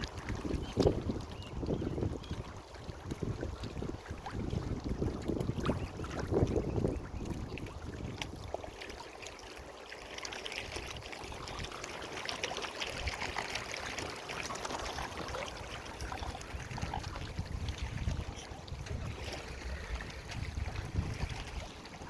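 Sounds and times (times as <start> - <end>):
wind on microphone: 0.0 - 8.6, 15.0 - 22.0
water trickling and splashing: 0.0 - 22.0.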